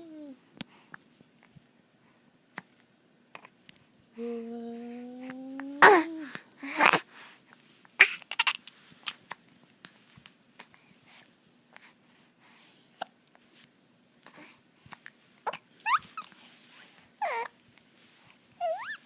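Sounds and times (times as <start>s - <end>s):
person hiccuping: 5.8s - 6.1s.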